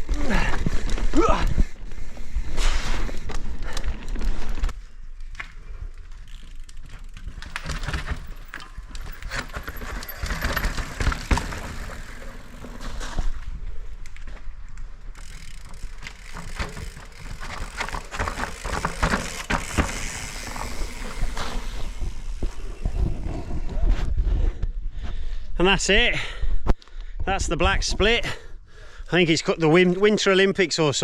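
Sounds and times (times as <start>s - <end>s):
bike clattering over rocks: 6.2s - 13.4s, 15.1s - 22.6s.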